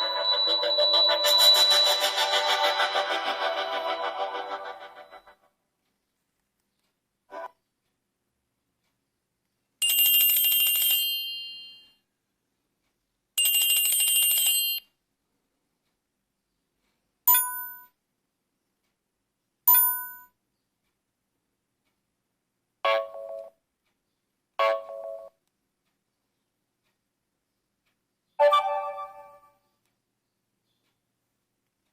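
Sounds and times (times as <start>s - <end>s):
mobile phone tones: 0.0s - 3.5s
brief chimes: 0.0s - 3.8s.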